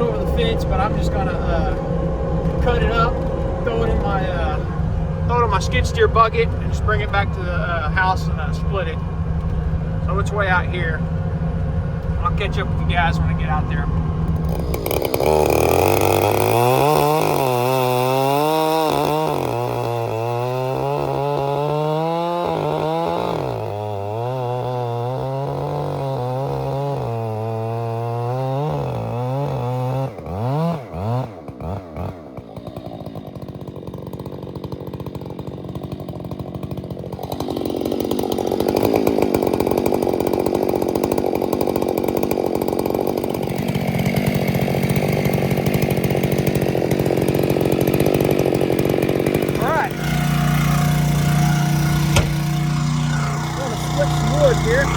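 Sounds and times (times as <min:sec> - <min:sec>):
chainsaw cutting wood: 0:00.0 - 0:54.9
chainsaw running: 0:00.0 - 0:54.9.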